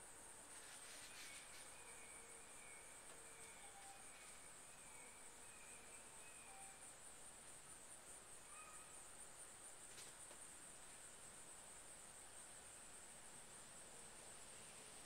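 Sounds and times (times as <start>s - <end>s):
high-pitched insect trill: 0.6s - 9.2s.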